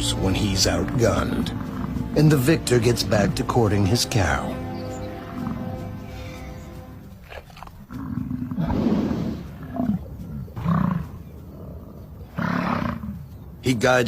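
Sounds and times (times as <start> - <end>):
bison bellowing: 0.0 - 2.8, 4.9 - 13.3.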